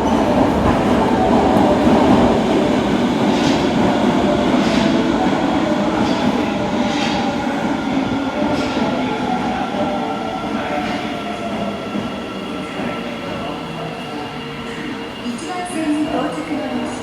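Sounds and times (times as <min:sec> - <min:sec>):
subway train drive whine: 0:00.0 - 0:17.0
train wheels rumbling: 0:00.0 - 0:17.0.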